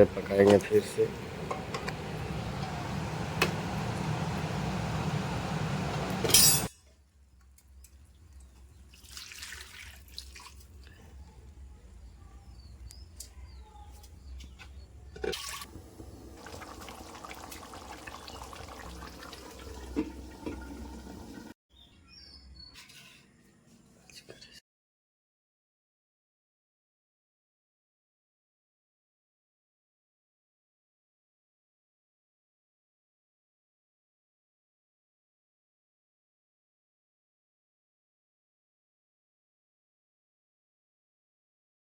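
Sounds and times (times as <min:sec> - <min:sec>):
curry bubbling in a pot: 0:15.7 - 0:21.5.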